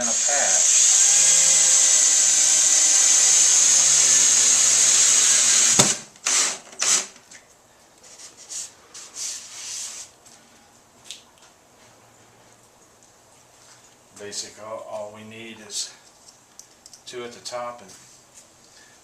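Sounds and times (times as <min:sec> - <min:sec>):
power drill driving screws: 0:00.0 - 0:07.2
drill click: 0:02.6 - 0:07.1.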